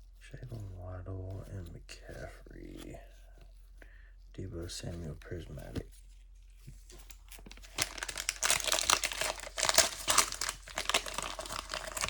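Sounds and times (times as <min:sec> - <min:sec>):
plastic wrapper crinkling: 0:04.8 - 0:12.0.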